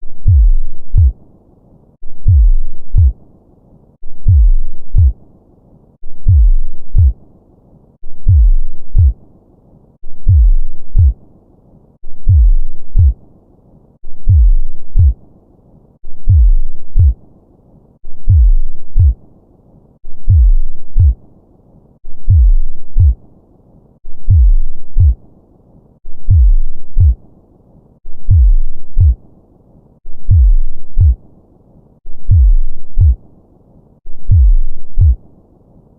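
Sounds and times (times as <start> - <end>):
heartbeat thumps: 0.0 - 1.2, 2.0 - 3.2, 4.0 - 5.2, 6.0 - 7.2, 8.0 - 9.2, 10.0 - 11.2, 12.0 - 13.2, 14.0 - 15.2, 16.1 - 17.2, 18.1 - 19.2, 20.1 - 21.2, 22.1 - 23.2, 24.1 - 25.2, 26.1 - 27.2, 28.1 - 29.2, 30.1 - 31.2, 32.1 - 33.2, 34.1 - 35.2
faint low hiss: 0.0 - 35.9.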